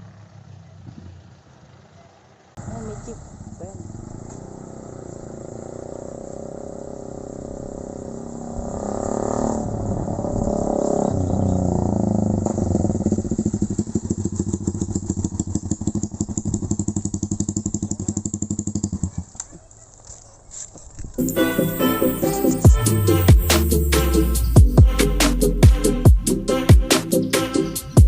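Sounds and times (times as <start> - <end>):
motorcycle engine revving: 0.0 - 19.8, 21.2 - 28.0.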